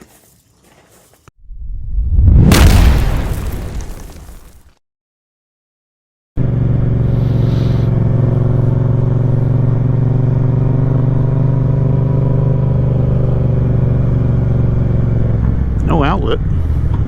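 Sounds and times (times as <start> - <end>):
motorcycle engine droning: 6.4 - 17.0.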